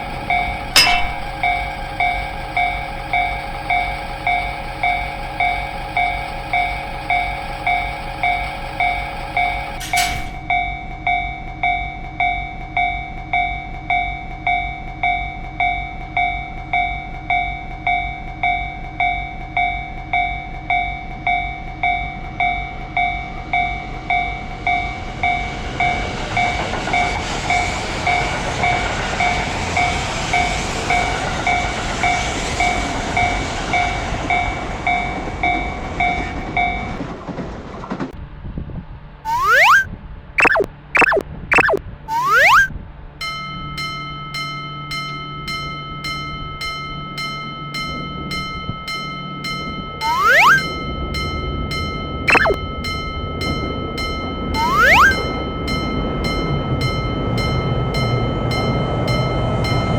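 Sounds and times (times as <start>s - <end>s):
level crossing alarm bell ringing: 0.0s - 10.3s
sharp click: 0.8s - 1.4s.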